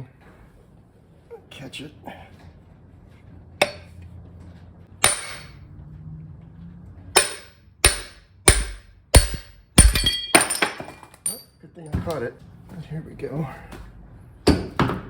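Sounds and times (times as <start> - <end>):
hammer striking metal socket: 3.6 - 3.9, 5.0 - 5.6, 7.2 - 11.4.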